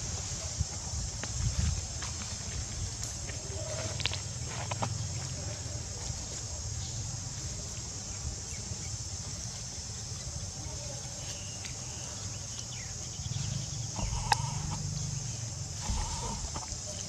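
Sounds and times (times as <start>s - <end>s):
high-pitched insect drone: 12.8s - 17.0s
low rumble: 13.9s - 16.7s.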